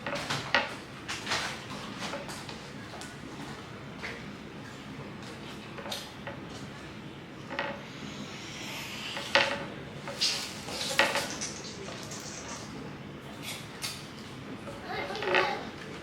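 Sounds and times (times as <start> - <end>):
steady background hiss: 6.8 - 14.6.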